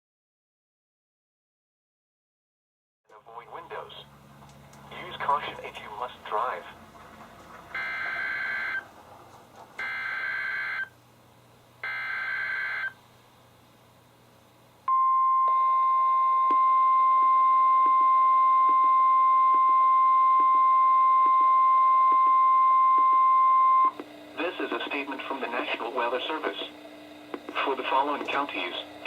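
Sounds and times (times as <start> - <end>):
steady warning alert tone: 7.8 - 8.8.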